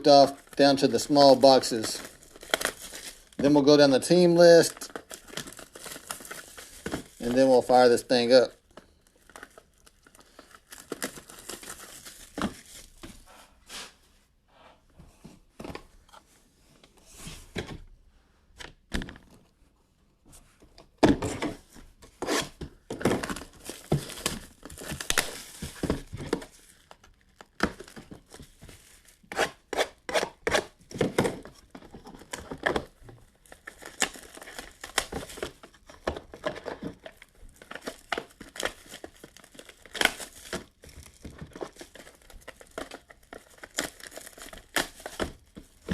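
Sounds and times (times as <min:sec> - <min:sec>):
shrink wrap tearing and crinkling: 0:00.0 - 0:13.0, 0:23.2 - 0:30.8, 0:32.2 - 0:45.9.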